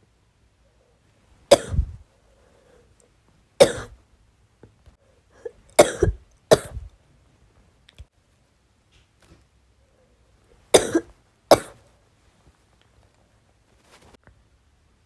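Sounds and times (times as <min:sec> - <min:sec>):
woman coughing: 0:01.5 - 0:01.9, 0:03.6 - 0:04.0, 0:05.4 - 0:06.8, 0:10.8 - 0:11.8.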